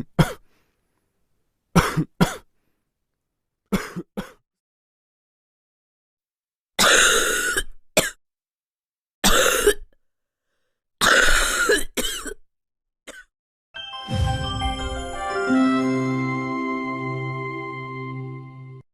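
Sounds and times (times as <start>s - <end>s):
person coughing: 0.0s - 0.4s, 1.8s - 2.5s, 3.7s - 4.4s, 6.8s - 8.2s, 9.2s - 9.9s, 11.0s - 12.4s
music jingle: 13.8s - 18.8s.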